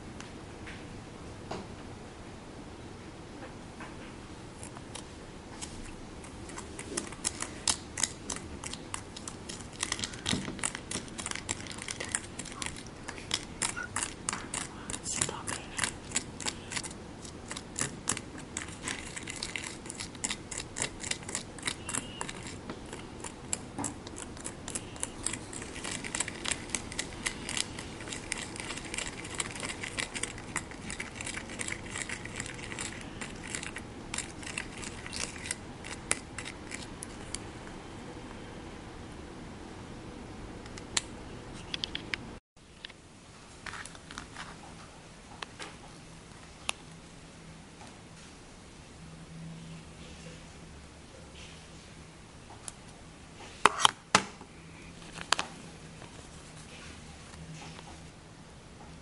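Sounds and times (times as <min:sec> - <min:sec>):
plastic utensils clicking and scraping: 0:06.4 - 0:37.4.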